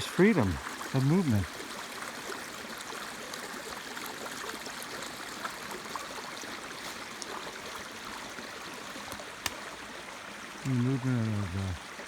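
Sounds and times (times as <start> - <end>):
running water flowing: 0.0 - 12.0
small splashing ticks: 6.8 - 9.9.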